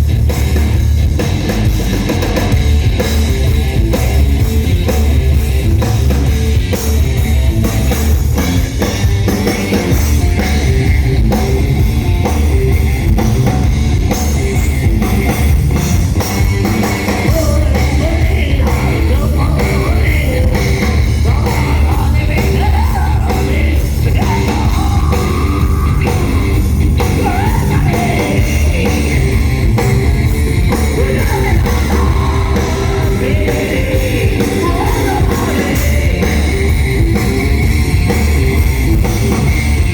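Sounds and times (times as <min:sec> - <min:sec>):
rock band playing: 0:00.0 - 0:39.9
person singing: 0:17.1 - 0:29.3, 0:30.8 - 0:36.6.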